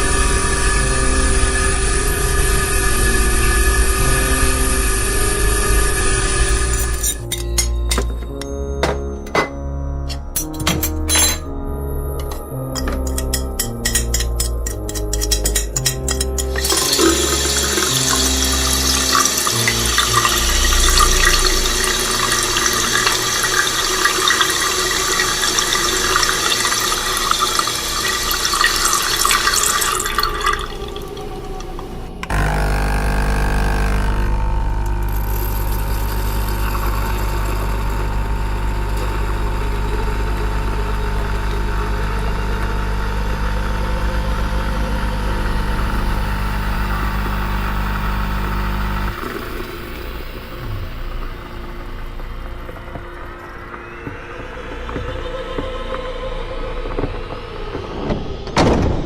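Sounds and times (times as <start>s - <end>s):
appliance motor humming: 12.1s - 56.1s
water running from tap: 12.7s - 32.0s, 35.1s - 51.8s.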